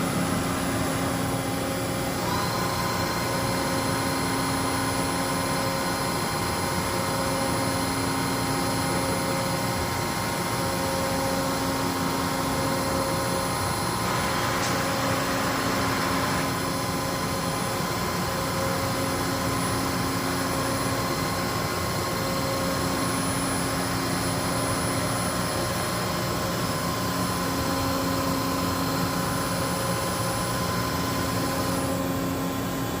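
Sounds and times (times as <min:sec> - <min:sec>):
machine hum with steady tones: 0:00.0 - 0:33.0.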